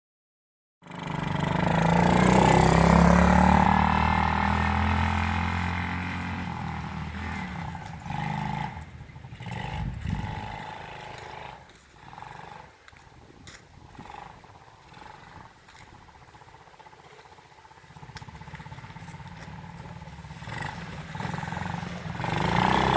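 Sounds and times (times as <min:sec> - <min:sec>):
atv engine running: 0:00.8 - 0:22.9.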